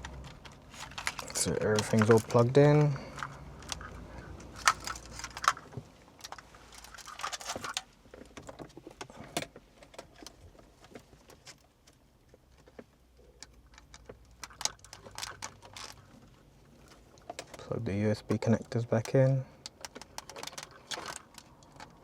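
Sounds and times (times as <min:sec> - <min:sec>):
plastic connectors clicking and rattling: 0:00.0 - 0:08.6, 0:13.4 - 0:16.1, 0:18.2 - 0:22.0.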